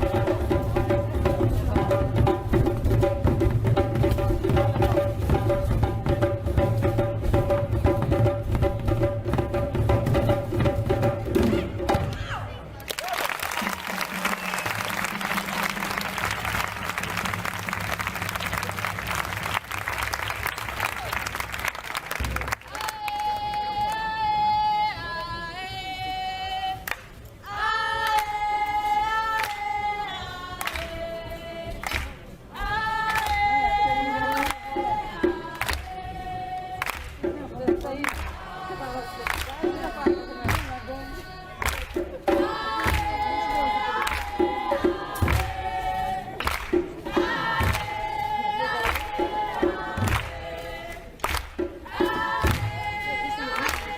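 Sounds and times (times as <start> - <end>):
choir singing held notes: 42.3 - 53.9.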